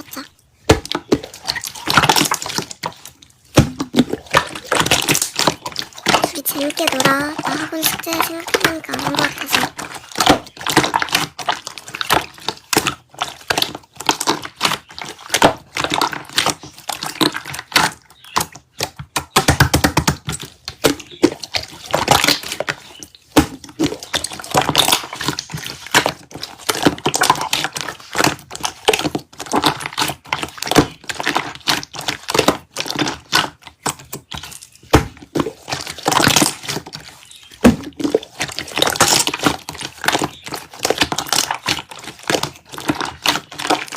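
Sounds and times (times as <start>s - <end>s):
slime squished by hand: 0.0s - 43.9s.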